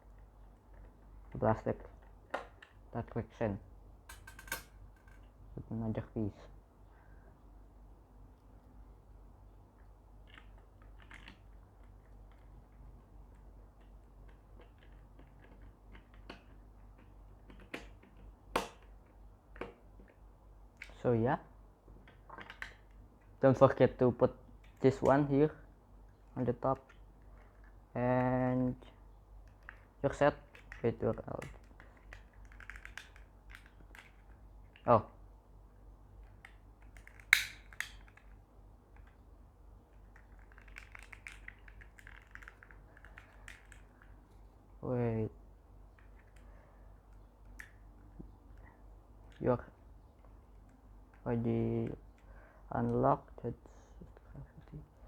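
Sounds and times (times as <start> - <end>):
plastic parts clicking and tapping: 4.1 - 5.3, 10.2 - 20.2, 21.9 - 23.4
plastic lighter clicks and rattles: 37.0 - 38.3.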